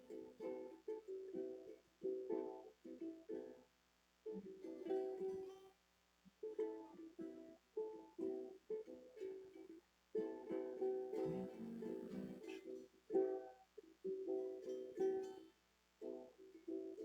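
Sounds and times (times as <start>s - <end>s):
acoustic guitar strumming: 11.2s - 12.6s.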